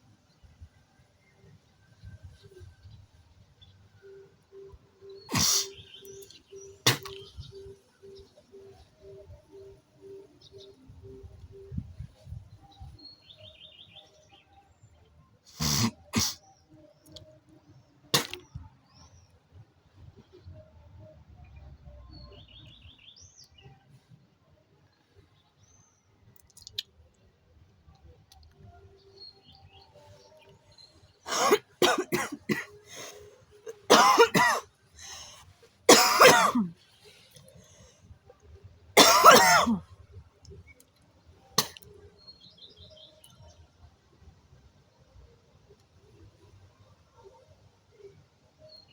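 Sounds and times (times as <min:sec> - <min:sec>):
faint birds chirping: 0:00.0 - 0:48.9
person coughing: 0:05.3 - 0:05.8, 0:31.3 - 0:34.6, 0:35.9 - 0:36.7, 0:39.0 - 0:39.8
person spitting: 0:05.3 - 0:05.8, 0:06.8 - 0:07.3, 0:15.5 - 0:16.4, 0:18.2 - 0:18.4.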